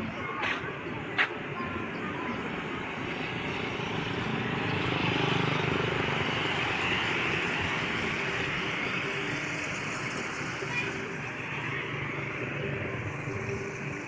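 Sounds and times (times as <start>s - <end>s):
vehicle engine passing: 2.9s - 10.6s.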